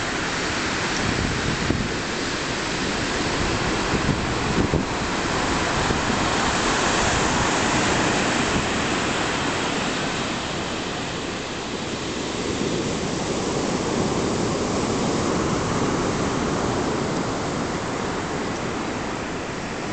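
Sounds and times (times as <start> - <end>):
surf breaking on a beach: 0.0 - 19.9.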